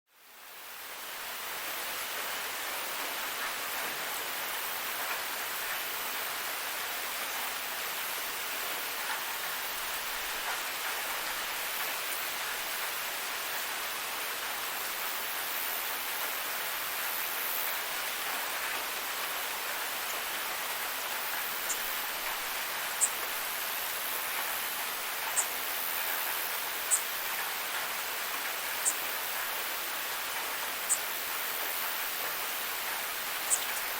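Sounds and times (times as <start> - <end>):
high-pitched ticks: 25.2 - 25.5, 32.8 - 33.9.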